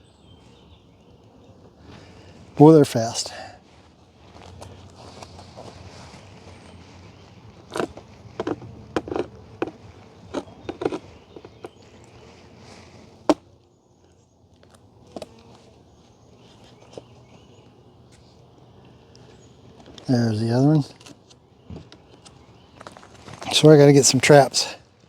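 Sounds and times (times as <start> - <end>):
clicks and knocks from hive: 7.7 - 11.8, 15.1 - 15.6.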